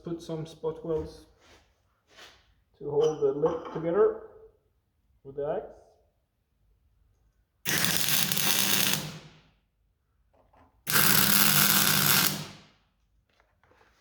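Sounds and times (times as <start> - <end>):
welder buzzing: 7.7 - 9.3, 10.9 - 12.6.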